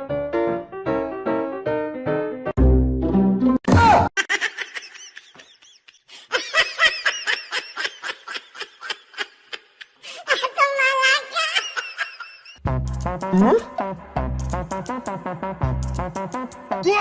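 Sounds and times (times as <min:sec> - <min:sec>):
high-pitched laughter: 0:04.2 - 0:12.6.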